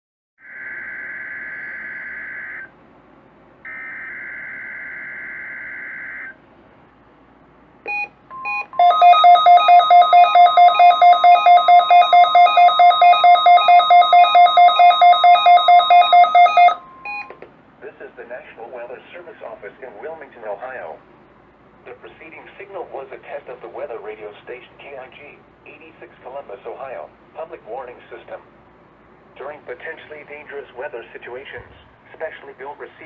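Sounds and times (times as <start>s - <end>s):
loud rapid beeping alarm: 0.4s - 2.7s, 3.7s - 6.4s, 7.9s - 17.3s
short beeps: 7.9s - 17.3s
warbling digital header tones: 8.8s - 16.8s.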